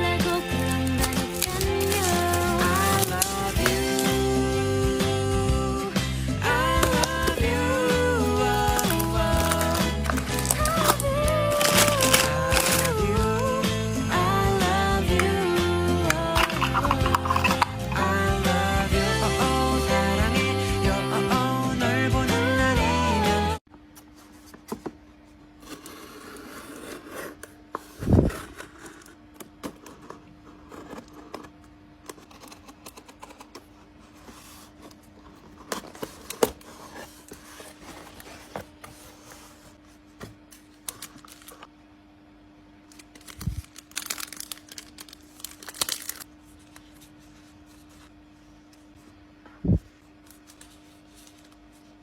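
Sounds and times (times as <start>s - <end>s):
background music: 0.0s - 23.6s
packaging rustling and crinkling: 0.5s - 4.1s, 8.5s - 13.0s, 34.1s - 39.8s, 40.4s - 41.7s, 42.9s - 47.7s.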